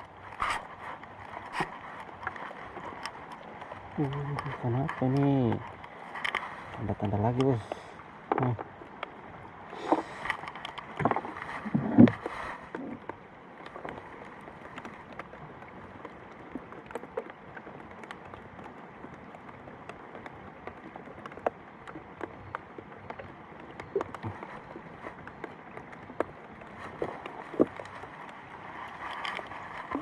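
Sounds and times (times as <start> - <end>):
steady rain falling: 0.0 - 30.0
handling knocks and rustles: 23.9 - 30.0.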